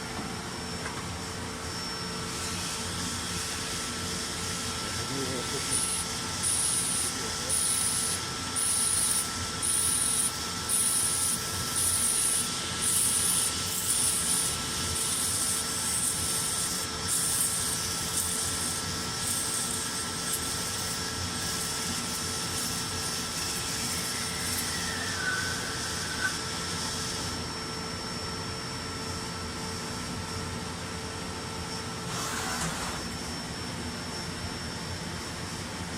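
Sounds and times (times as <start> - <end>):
machine whine: 0.0 - 35.9.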